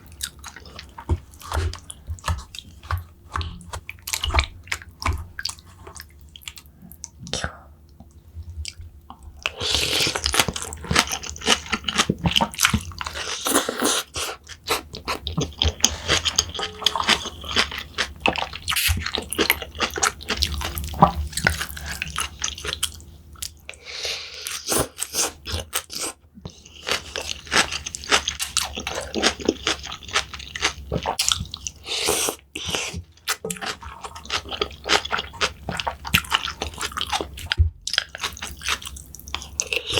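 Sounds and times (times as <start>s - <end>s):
crunchy chewing: 9.4s - 39.9s.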